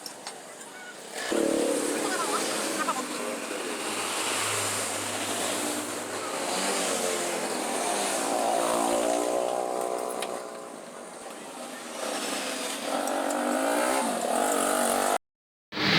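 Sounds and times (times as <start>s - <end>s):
scooter engine revving: 1.2s - 15.2s.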